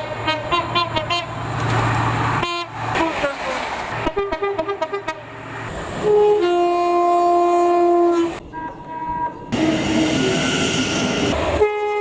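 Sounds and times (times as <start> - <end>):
two-tone train horn: 2.4 - 2.7, 4.0 - 5.3, 6.0 - 10.3, 11.5 - 12.0.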